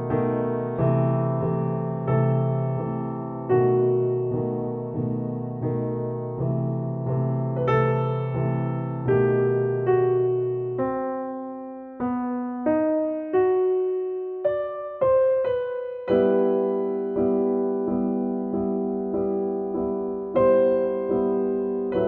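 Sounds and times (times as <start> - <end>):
slow solo piano music: 0.0 - 22.0.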